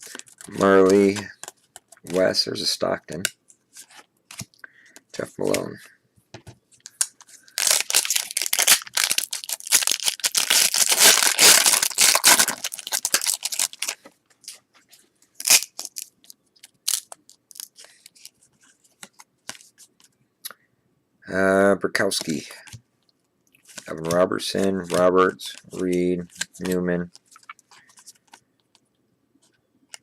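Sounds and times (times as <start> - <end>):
wrapper tearing and crinkling: 6.8 - 14.6, 15.4 - 18.3.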